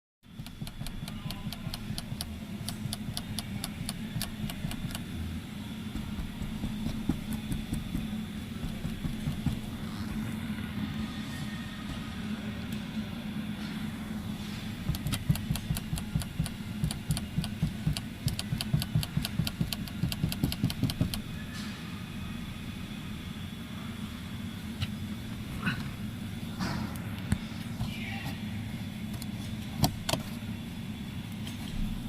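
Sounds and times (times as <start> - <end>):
road and engine hum: 0.3 - 21.3
car ceiling rattling: 6.0 - 9.8.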